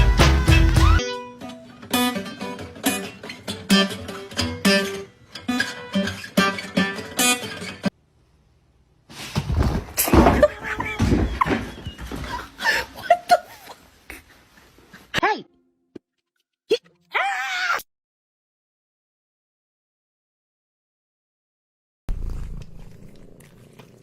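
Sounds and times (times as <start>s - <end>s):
plucked acoustic guitar: 0.0s - 7.9s.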